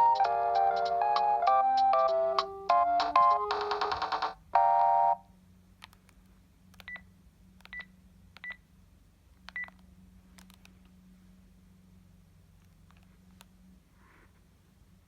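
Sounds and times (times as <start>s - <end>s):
phone ringtone melody: 0.0s - 5.2s.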